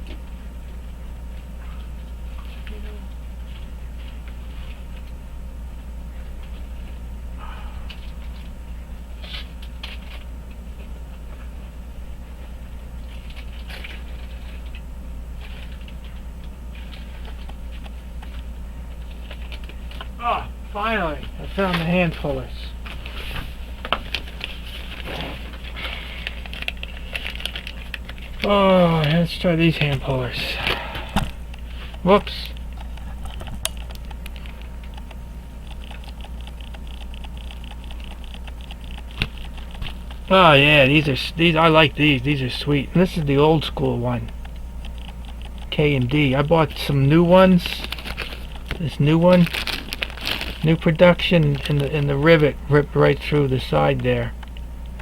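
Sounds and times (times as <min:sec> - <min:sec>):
steady low hum: 0:00.0 - 0:55.0
tools rummaged clicking: 0:47.6 - 0:52.2.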